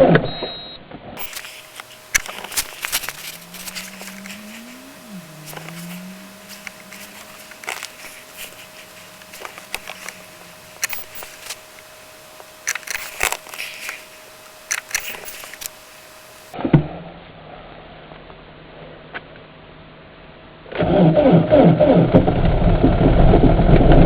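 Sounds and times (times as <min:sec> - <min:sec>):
diesel car engine starting: 0:01.2 - 0:16.6
faint low hum: 0:01.2 - 0:16.6
sharp clicks and crackles: 0:01.2 - 0:16.6.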